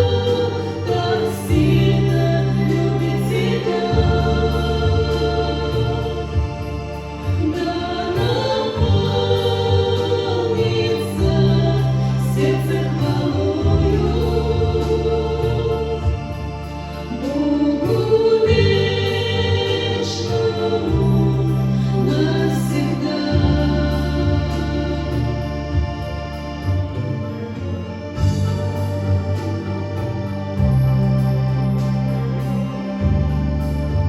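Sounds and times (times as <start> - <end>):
hymn on electronic organ: 0.0 - 34.0.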